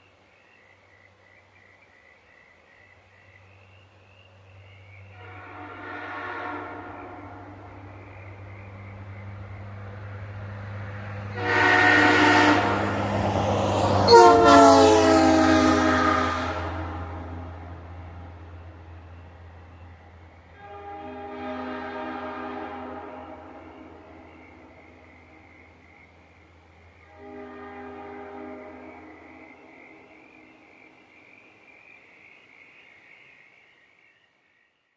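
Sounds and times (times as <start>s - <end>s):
frogs calling: 0.0s - 20.6s, 22.8s - 34.9s
locomotive air horn chord: 5.1s - 7.8s, 11.3s - 13.2s, 13.9s - 17.7s, 20.5s - 24.4s, 27.1s - 29.4s.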